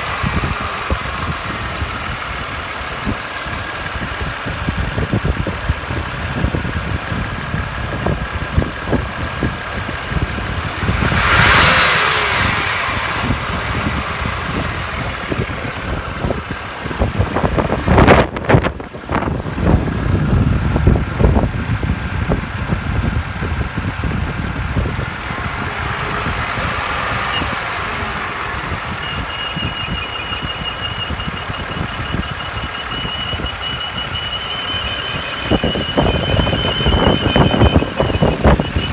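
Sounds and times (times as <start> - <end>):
car engine running: 0.0 - 38.9
high whistle: 26.1 - 38.9.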